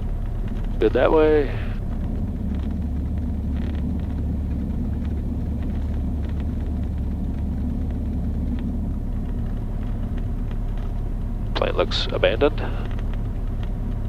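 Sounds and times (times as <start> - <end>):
propeller plane engine droning: 0.0 - 14.0.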